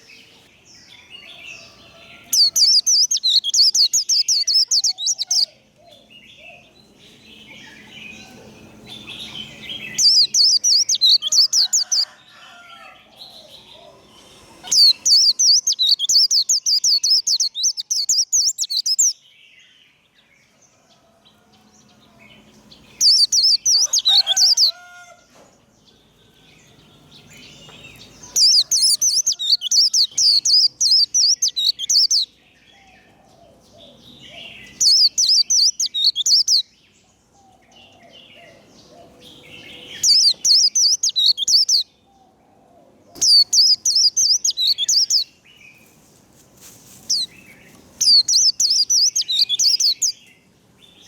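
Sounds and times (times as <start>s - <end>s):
quiet bird chirps: 0.0s - 12.2s, 13.2s - 21.1s, 25.7s - 45.9s
bird singing high twittering song: 0.0s - 20.6s, 21.8s - 24.9s, 25.7s - 42.4s, 43.1s - 45.9s, 47.0s - 51.0s.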